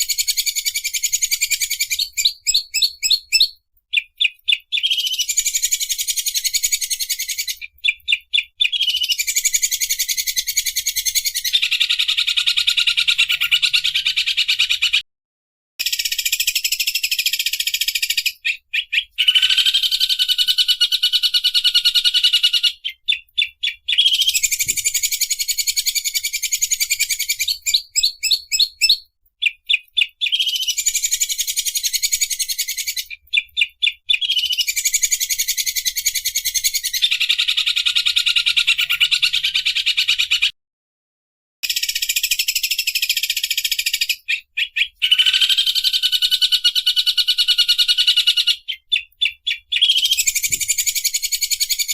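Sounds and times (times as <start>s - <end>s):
bird singing rattling trills: 0.0s - 14.6s, 15.8s - 40.2s.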